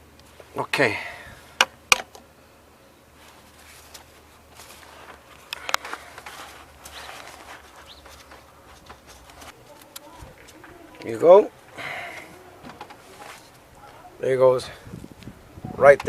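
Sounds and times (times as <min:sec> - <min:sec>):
rustling: 0:03.1 - 0:15.4.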